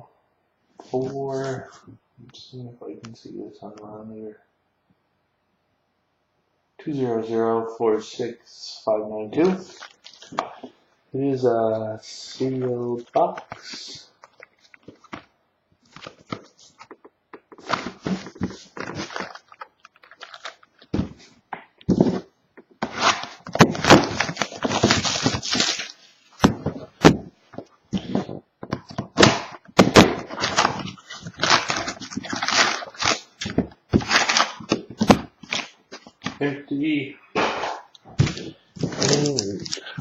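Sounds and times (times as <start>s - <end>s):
shrink-wrap crinkling and ripping: 9.6s - 10.7s, 17.6s - 21.0s, 22.8s - 27.2s, 29.0s - 36.4s, 38.2s - 40.0s.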